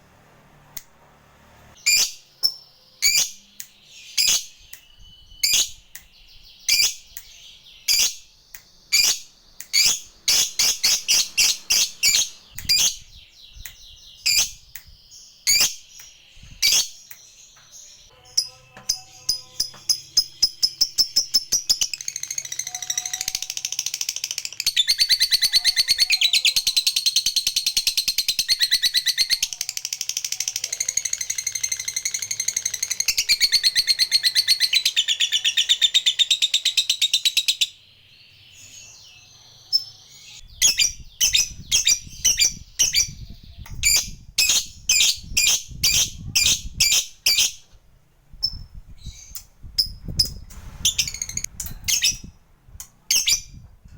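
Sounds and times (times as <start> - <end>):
bird sharp chirps: 1.8 - 47.6
lovebird chattering trill: 8.9 - 13.2, 18.2 - 37.7, 39.7 - 47.6.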